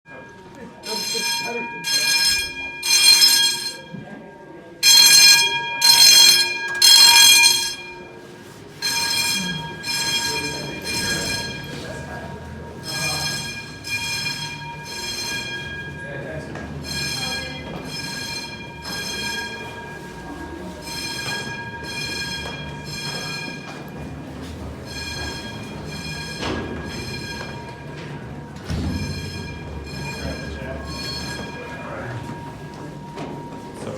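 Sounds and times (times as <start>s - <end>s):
fire alarm sounding in bursts: 0.8s - 4.0s, 4.8s - 33.9s.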